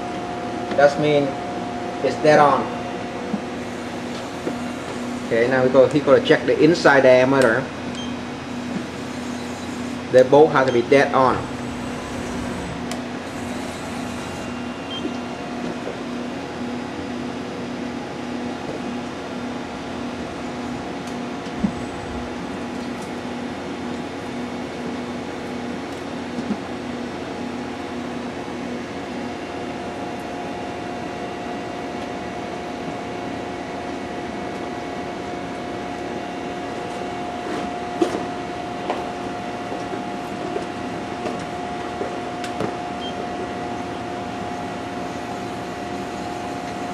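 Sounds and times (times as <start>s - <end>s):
machine tool humming: 0.0s - 5.4s, 7.8s - 10.2s, 11.0s - 16.4s
steady high-pitched tone: 10.7s - 16.3s
pulsing tone: 11.4s - 15.2s.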